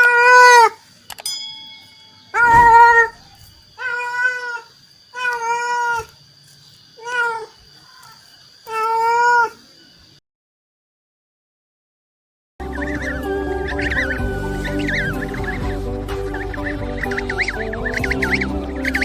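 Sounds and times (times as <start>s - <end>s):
cat meowing: 2.4s - 3.2s, 3.8s - 6.1s, 7.0s - 8.1s, 8.7s - 9.6s.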